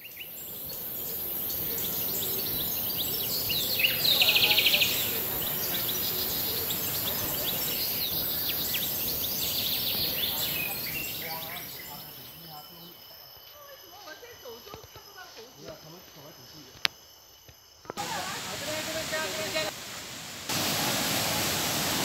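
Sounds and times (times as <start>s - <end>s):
bird chirps: 0.0s - 12.9s
high insect buzz: 0.0s - 22.0s.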